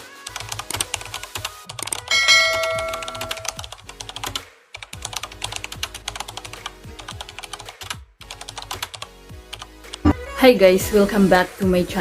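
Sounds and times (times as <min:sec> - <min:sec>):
background music: 0:00.0 - 0:12.0
keyboard typing clicks: 0:00.4 - 0:04.4.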